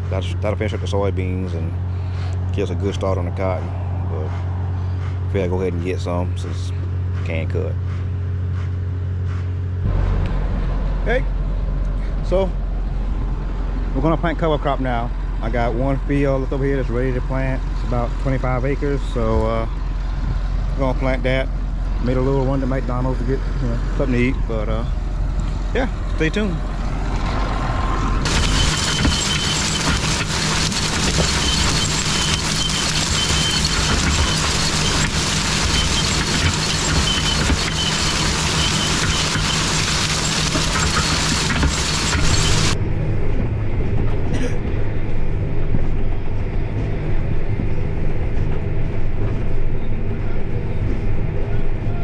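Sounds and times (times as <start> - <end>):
tractor engine humming: 0.0 - 44.2
loud crackling rattling noise: 28.2 - 42.8.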